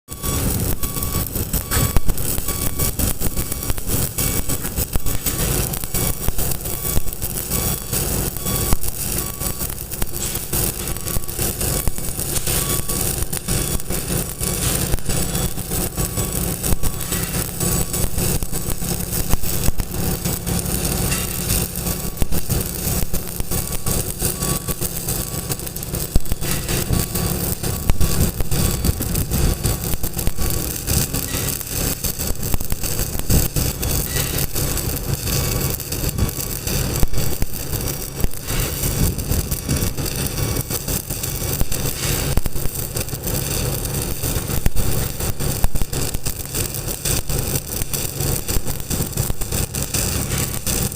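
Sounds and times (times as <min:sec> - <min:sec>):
welding arc crackling: 0:00.0 - 0:50.9
low hum: 0:10.2 - 0:41.6.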